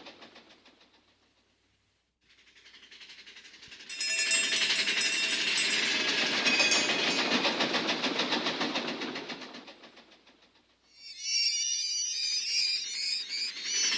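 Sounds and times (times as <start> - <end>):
train cars rattling on track: 3.6 - 10.4.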